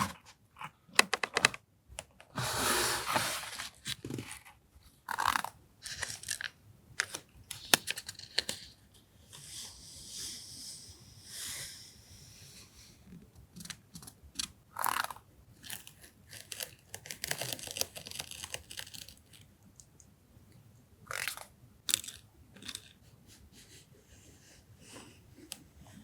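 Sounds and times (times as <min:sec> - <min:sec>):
packaging rustling and crinkling: 0:15.9 - 0:19.4.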